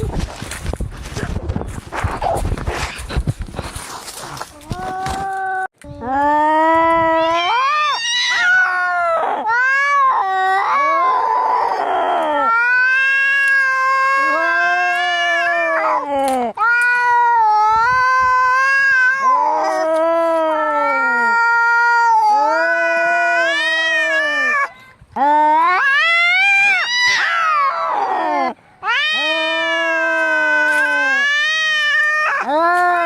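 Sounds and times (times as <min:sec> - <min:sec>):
cats yowling in a fight: 0:07.0 - 0:24.7, 0:25.5 - 0:33.0.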